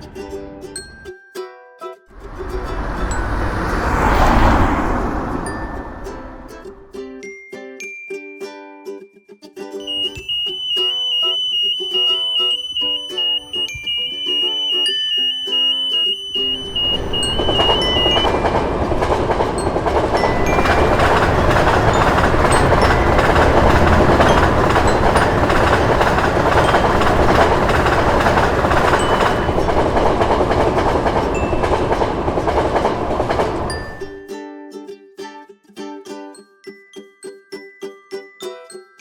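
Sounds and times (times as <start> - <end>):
train rumbling with wheel clatter: 2.2 - 6.9, 16.4 - 34.2.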